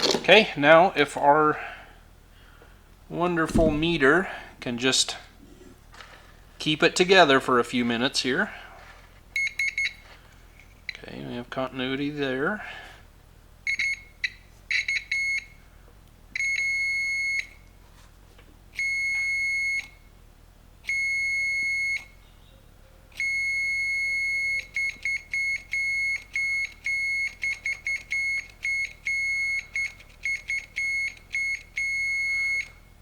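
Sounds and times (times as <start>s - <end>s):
multimeter continuity beeps: 9.4s - 10.0s, 13.7s - 15.6s, 16.4s - 17.6s, 18.8s - 20.0s, 20.9s - 22.2s, 23.2s - 32.8s.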